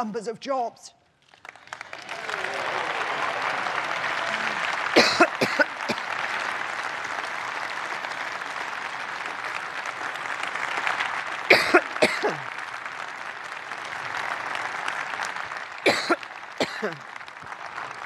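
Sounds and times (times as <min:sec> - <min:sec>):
audience applauding: 0:01.2 - 0:18.0
coughs into microphone: 0:04.9 - 0:06.2, 0:11.5 - 0:12.6, 0:15.8 - 0:17.0.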